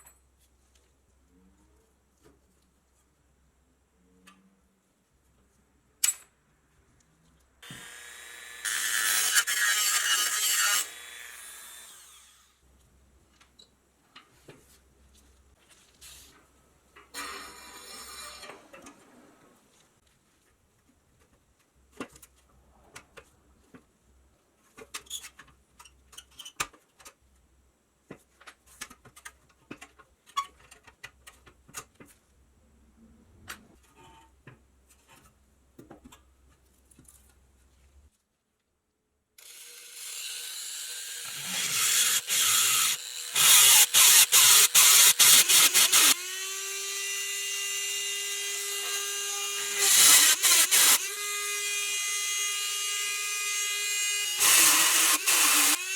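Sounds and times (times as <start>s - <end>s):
power tool motor whine: 7.6s - 12.4s, 39.4s - 55.9s.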